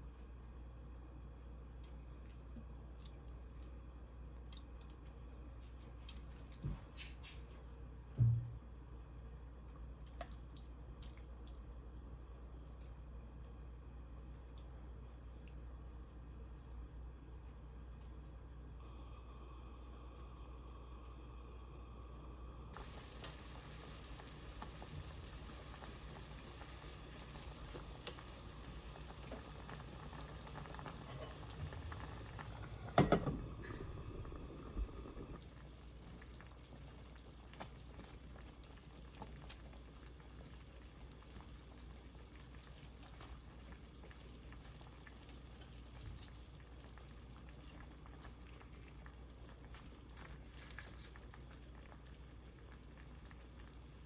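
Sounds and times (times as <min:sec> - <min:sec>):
food bubbling and sizzling: 0:22.7 - 0:54.0.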